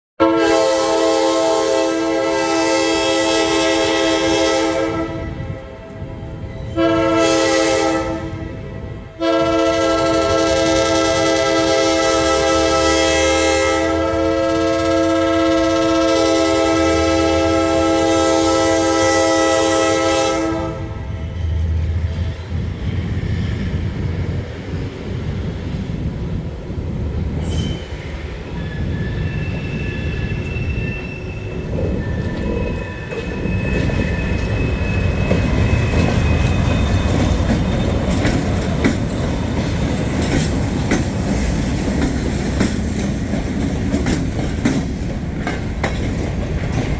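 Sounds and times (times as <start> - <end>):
locomotive air horn: 0.2 - 21.4
wheel squeals: 27.4 - 39.4
wheels clacking over rails: 31.6 - 46.9.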